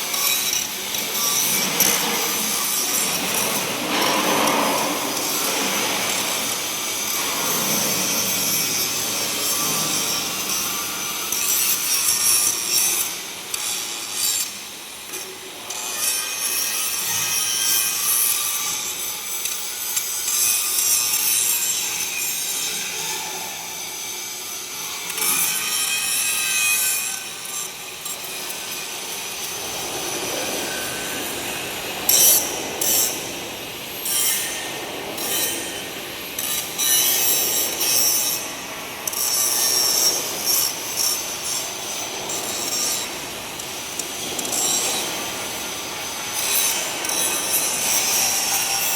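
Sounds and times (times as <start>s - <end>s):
angle grinder grinding metal: 0.0s - 48.9s.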